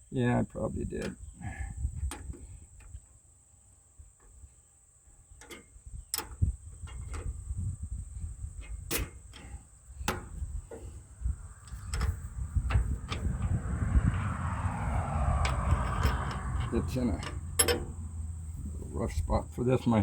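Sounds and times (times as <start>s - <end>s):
low rumbling handling noise: 5.2s - 20.0s
hand tools clicking and knocking: 15.4s - 18.1s.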